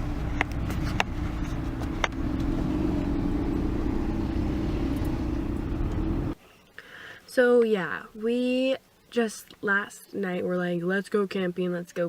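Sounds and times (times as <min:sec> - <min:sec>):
car engine pulling away: 0:00.0 - 0:06.4.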